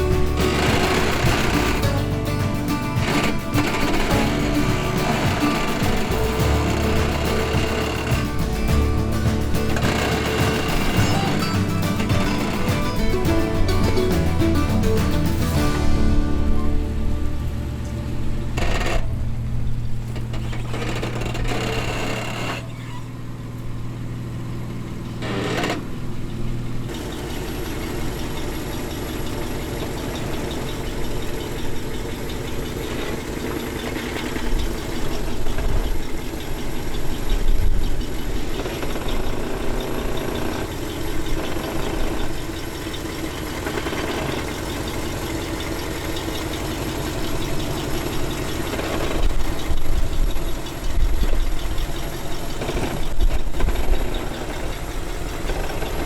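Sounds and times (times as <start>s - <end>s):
background music: 0.0s - 19.3s
off-road vehicle engine: 0.0s - 56.0s.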